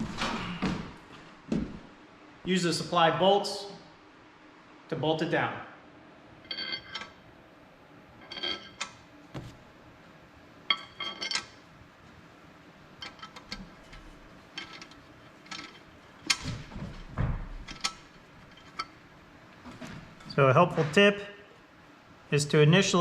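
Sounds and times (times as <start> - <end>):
metal bolts clinking: 6.5 - 7.2, 8.2 - 9.0, 10.7 - 11.6, 13.0 - 16.5, 17.6 - 19.0.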